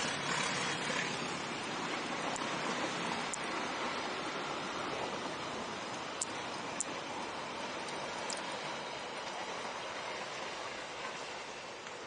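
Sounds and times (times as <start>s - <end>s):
rushing wind: 0.0s - 12.0s
vehicle road noise: 0.0s - 12.0s
faint ticks: 3.2s - 3.6s, 5.8s - 7.0s, 7.8s - 8.5s.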